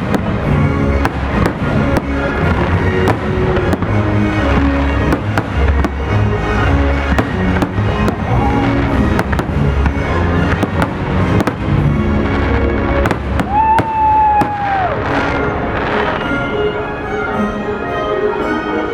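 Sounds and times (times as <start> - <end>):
fireworks bangs and crackling: 0.0 - 16.5
music: 0.0 - 18.9
fireworks whistling: 13.0 - 16.5.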